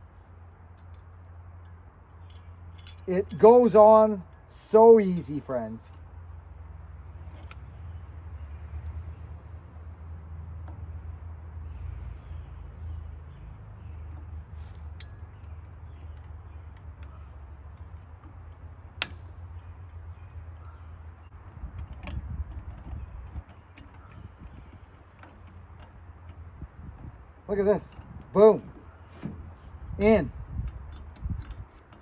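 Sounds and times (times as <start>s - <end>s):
metallic clicks and clinks: 0.7s - 5.5s.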